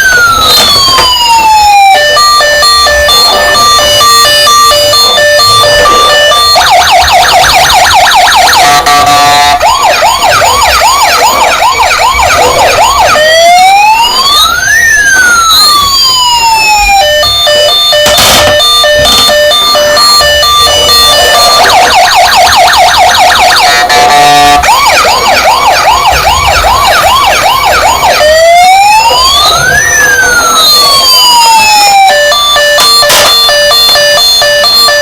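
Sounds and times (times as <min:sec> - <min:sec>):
toy electronic siren: 0:00.0 - 0:35.0.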